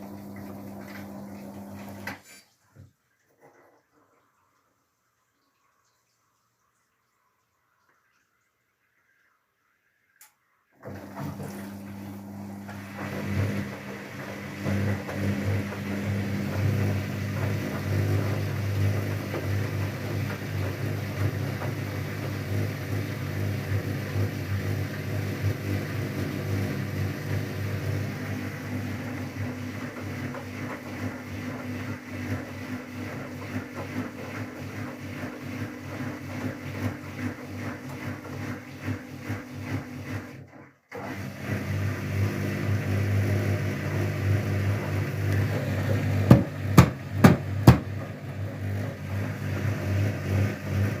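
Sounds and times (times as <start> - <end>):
washing machine motor hum: 0.0 - 51.0
sharp knocks: 46.3 - 47.9.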